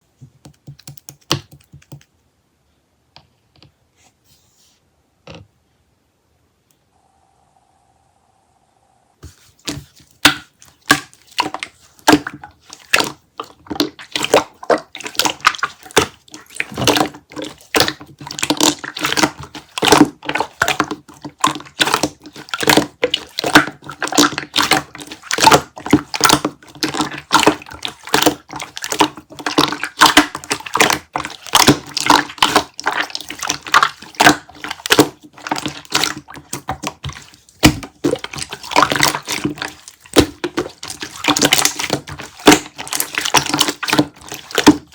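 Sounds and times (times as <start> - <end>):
jelly squelching and clicking: 9.6 - 44.9.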